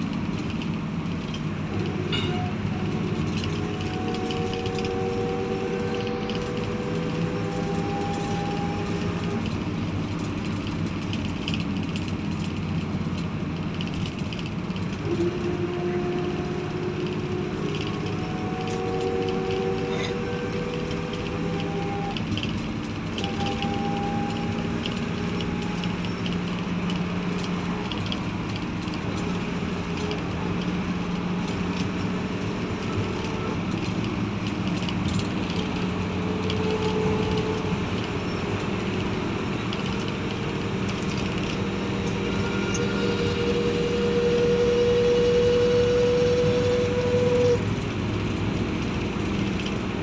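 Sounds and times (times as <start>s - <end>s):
traffic engines humming: 0.0s - 50.0s
engine tone rising: 1.8s - 10.4s, 23.2s - 50.0s.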